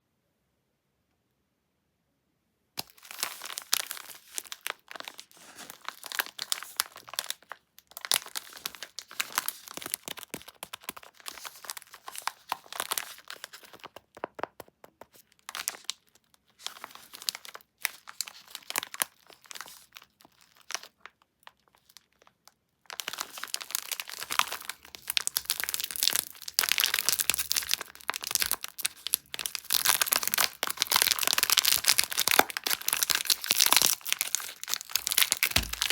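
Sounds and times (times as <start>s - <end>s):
packaging crinkling and tearing: 2.8s - 35.9s.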